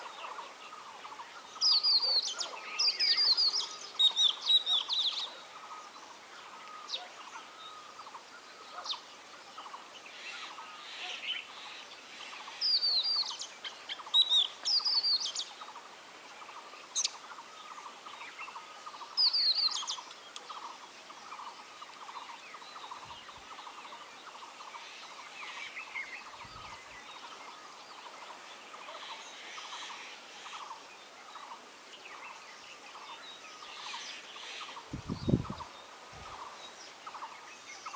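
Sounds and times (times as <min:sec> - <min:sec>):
bird singing whistled notes: 0:01.6 - 0:05.8, 0:12.6 - 0:15.6, 0:18.3 - 0:20.6.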